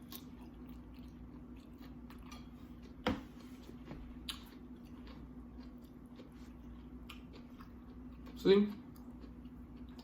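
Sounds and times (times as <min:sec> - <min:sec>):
chewing and mouth clicks: 0:00.0 - 0:03.0, 0:03.6 - 0:10.0.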